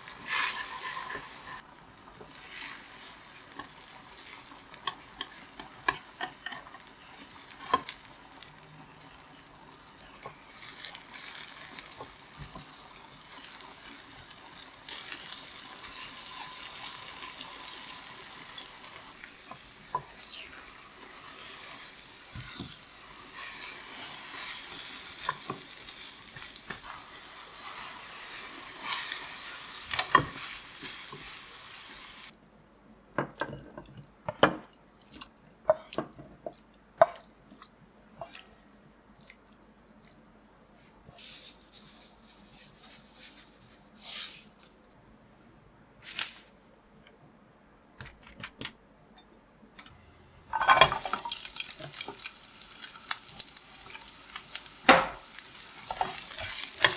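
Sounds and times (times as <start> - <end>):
food sizzling in frying pan: 0.0 - 32.3, 50.5 - 56.9
utensil scraping pan: 0.1 - 1.6, 50.5 - 52.8, 54.9 - 56.9.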